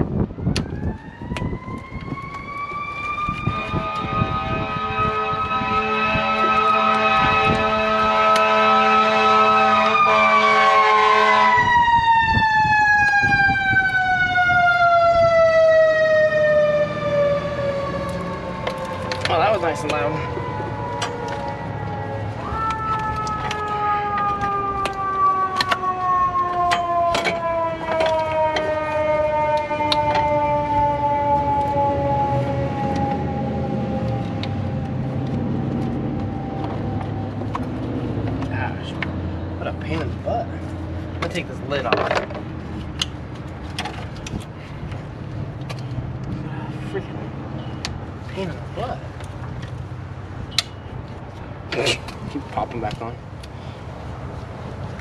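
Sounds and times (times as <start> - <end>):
two-tone vehicle alarm: 0.4 - 34.9.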